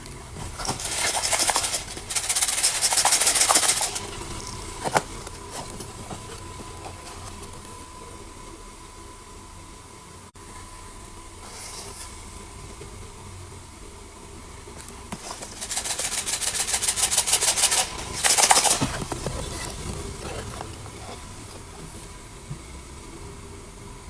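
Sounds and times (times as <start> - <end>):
plastic packaging crinkling: 0.4 - 7.6, 15.2 - 21.7.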